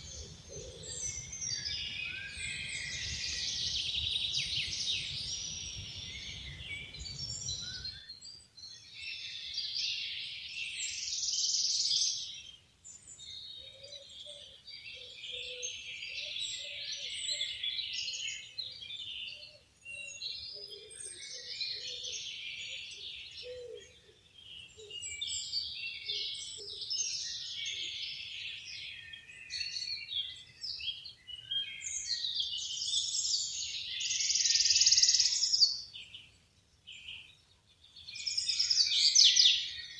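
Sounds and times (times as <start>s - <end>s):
songbirds warbling: 0.0s - 8.1s
low evenly spaced bird notes: 0.0s - 12.4s.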